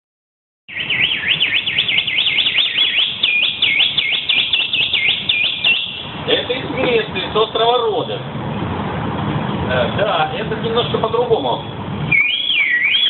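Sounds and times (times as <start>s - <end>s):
high warbling whistle: 0.7s - 6.2s, 12.1s - 13.0s.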